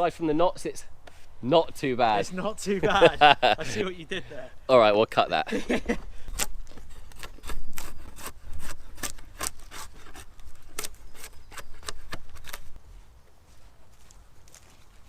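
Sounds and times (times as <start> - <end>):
hand saw cutting wood: 6.2 - 12.8.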